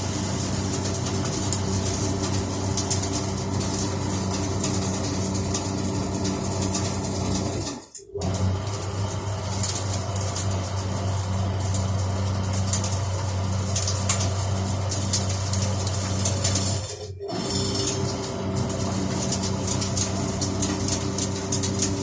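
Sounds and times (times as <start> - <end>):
electric motor hum: 8.2 - 22.0.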